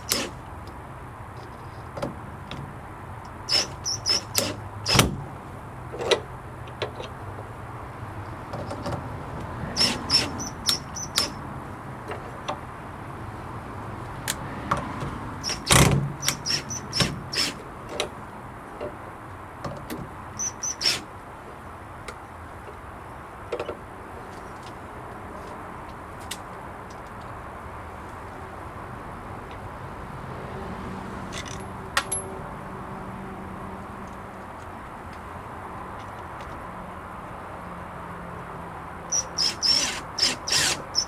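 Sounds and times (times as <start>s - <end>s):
metal latch clicks and clinks: 5.9s - 7.2s, 9.8s - 11.4s, 31.3s - 32.4s.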